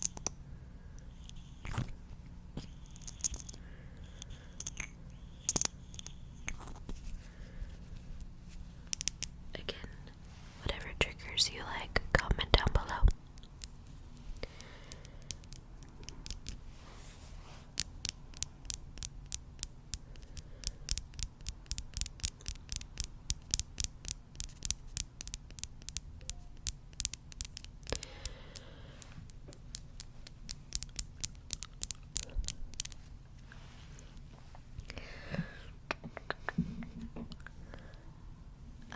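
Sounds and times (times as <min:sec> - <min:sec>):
soft hiss: 0:00.0 - 0:38.9
crisp clicks and scratches: 0:29.0 - 0:34.3.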